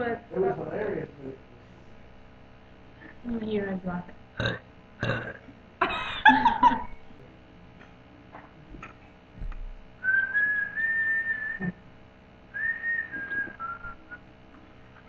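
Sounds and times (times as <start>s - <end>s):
person whistling: 10.0s - 11.8s, 12.6s - 14.2s.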